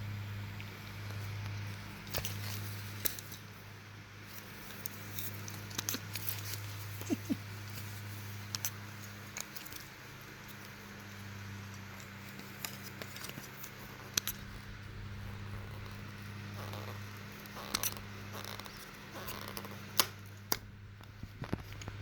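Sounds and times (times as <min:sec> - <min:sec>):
steady low hum: 0:00.0 - 0:22.0
monkey hiccuping: 0:07.0 - 0:07.5.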